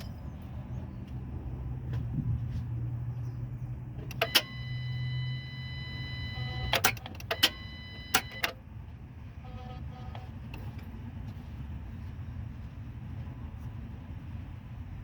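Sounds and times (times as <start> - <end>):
electronic warning chime: 4.2 - 8.5.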